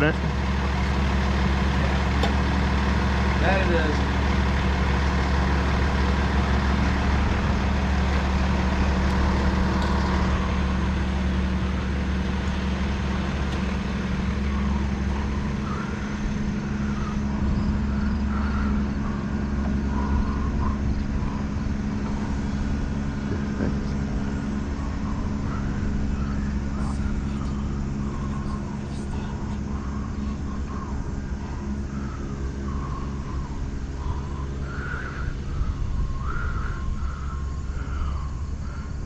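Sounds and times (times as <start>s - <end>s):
large engine idling: 0.0s - 39.0s.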